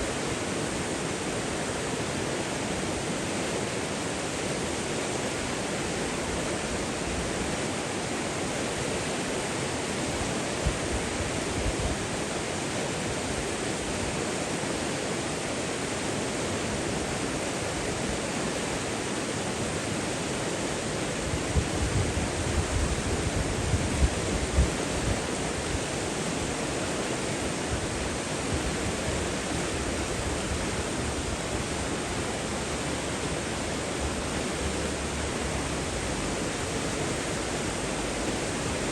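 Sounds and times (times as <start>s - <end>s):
rushing flowing water: 0.0s - 38.9s.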